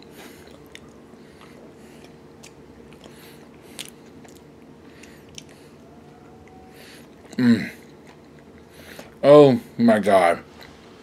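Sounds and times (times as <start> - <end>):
person biting and chewing food: 0.0 - 5.8, 6.4 - 9.2.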